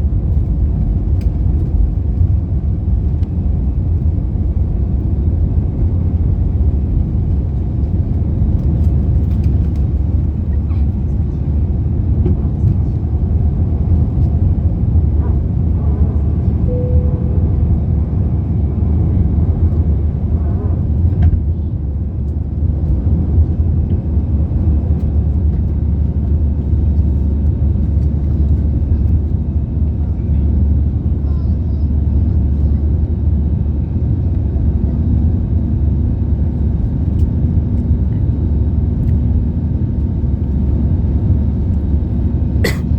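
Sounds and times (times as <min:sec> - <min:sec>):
airplane cabin rumble: 0:00.0 - 0:42.9
short steady tone: 0:16.7 - 0:18.0.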